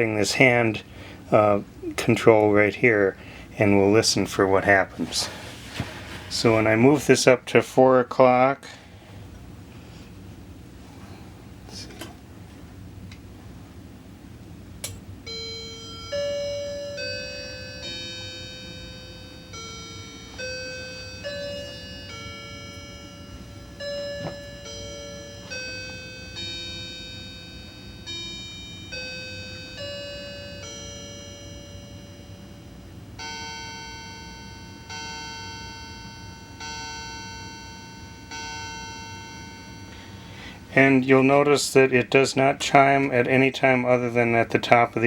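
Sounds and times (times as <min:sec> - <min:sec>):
click: 0:14.8 - 0:15.0
electronic clock chime melody: 0:15.2 - 0:41.4
clock bell striking the hour: 0:15.2 - 0:44.9.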